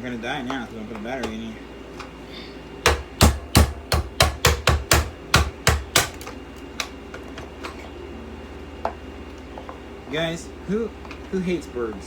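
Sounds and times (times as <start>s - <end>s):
sharp knocks: 2.9s - 6.2s.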